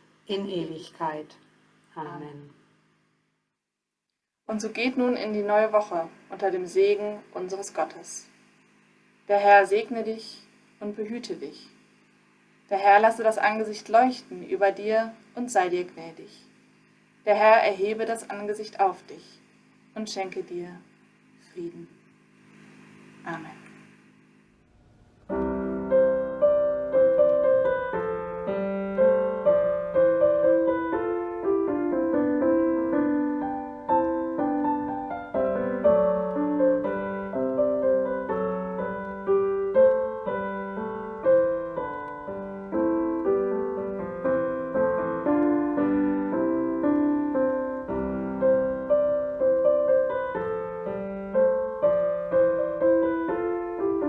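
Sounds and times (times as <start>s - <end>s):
piano piece: 24.7s - 54.0s.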